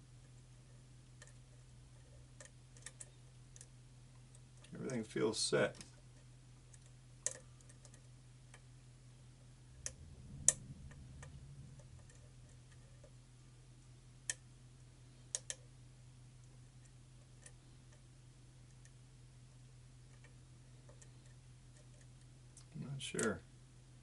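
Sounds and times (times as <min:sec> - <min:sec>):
faint low hum: 0:00.0 - 0:24.0.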